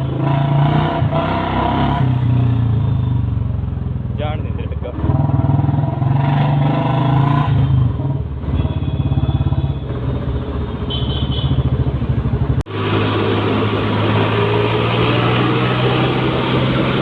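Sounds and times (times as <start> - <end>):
motorcycle engine running: 7.6 - 17.0.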